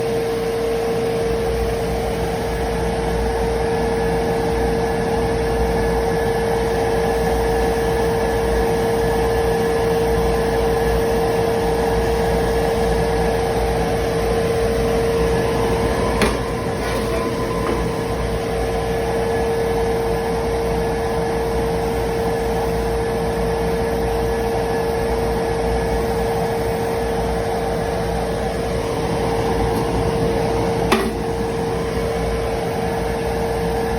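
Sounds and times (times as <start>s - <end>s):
welding arc buzzing: 28.5s - 32.2s.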